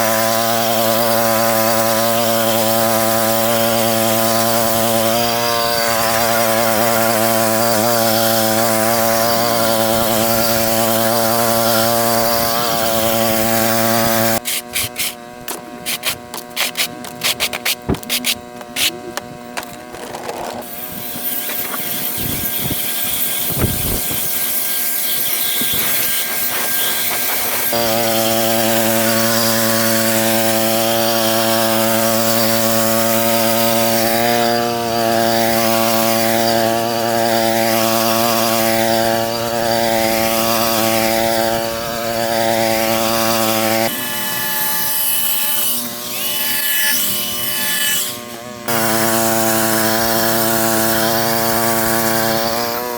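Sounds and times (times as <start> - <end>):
wire brush scraping pavement: 0.0 - 52.9.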